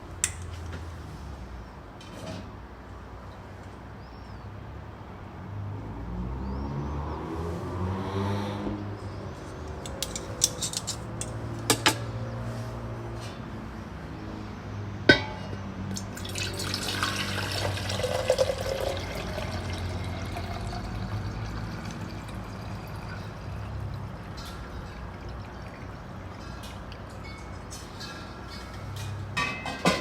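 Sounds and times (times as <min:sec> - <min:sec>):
kitchenware clinking: 0:09.7 - 0:12.2, 0:15.1 - 0:15.7, 0:26.4 - 0:30.0
liquid pouring into a glass: 0:15.9 - 0:26.6.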